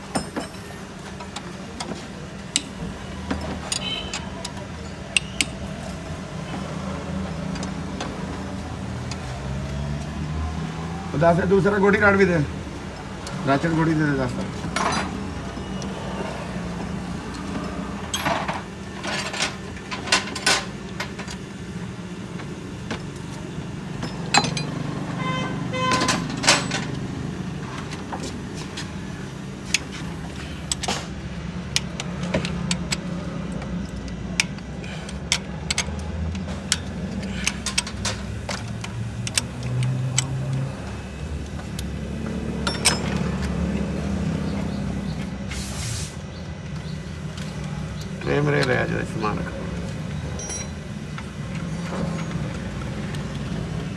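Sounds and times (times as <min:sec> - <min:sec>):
low hum of traffic: 0:00.0 - 0:53.9
metal hand tools clinking: 0:24.0 - 0:27.1, 0:42.6 - 0:43.6, 0:50.4 - 0:50.9.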